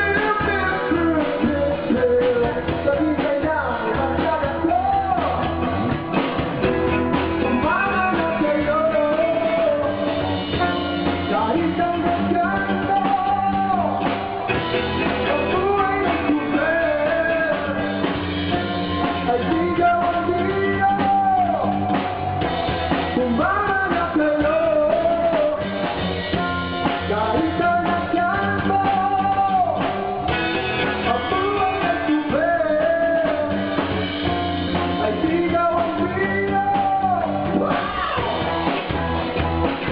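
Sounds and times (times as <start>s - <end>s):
rock song with singer and drums: 0.0s - 39.9s.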